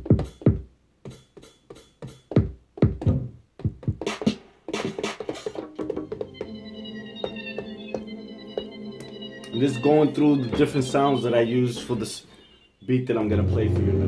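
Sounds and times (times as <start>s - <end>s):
sustained synth tone: 6.4s - 14.0s.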